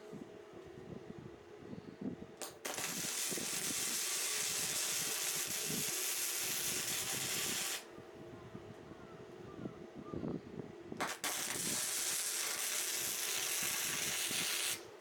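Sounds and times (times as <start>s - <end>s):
welding arc crackling hiss: 2.4s - 7.9s, 11.0s - 14.9s.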